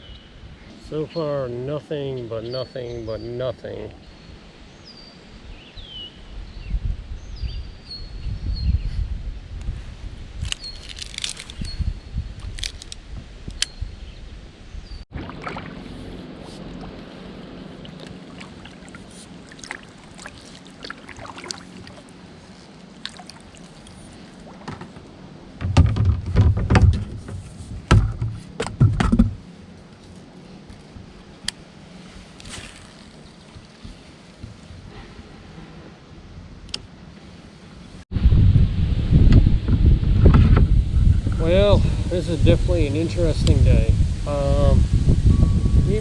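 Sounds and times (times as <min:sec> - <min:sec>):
wind buffeting microphone: 0:04.3 - 0:19.5, 0:38.1 - 0:46.0
water sloshing against kayak: 0:15.1 - 0:28.6, 0:29.2 - 0:35.6.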